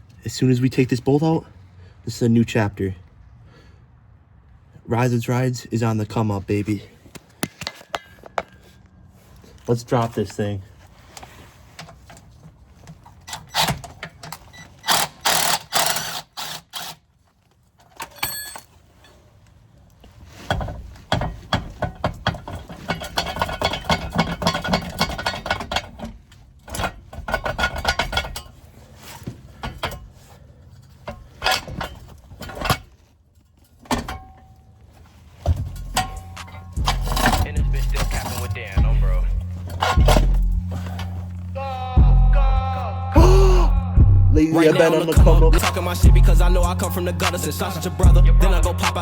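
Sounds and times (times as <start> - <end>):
hand tools clicking on metal: 13.2 - 17.0, 35.8 - 41.1.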